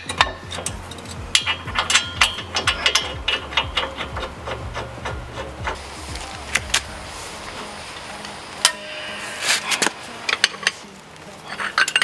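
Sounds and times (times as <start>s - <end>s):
ratchet wrench clicking: 0.0s - 7.7s.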